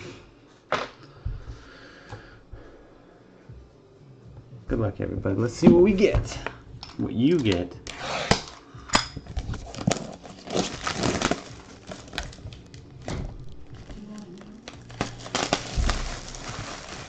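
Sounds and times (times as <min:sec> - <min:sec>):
rustling: 0:09.5 - 0:17.0.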